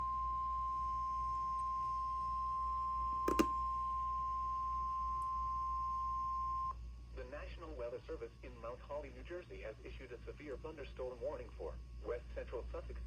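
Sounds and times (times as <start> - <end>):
high pure alarm tone: 0.0 - 6.7.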